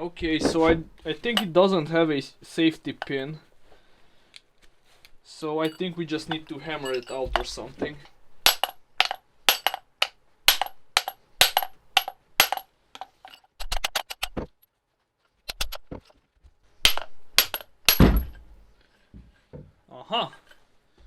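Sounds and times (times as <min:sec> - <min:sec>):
hammer striking metal: 0:08.5 - 0:12.6, 0:16.8 - 0:18.3.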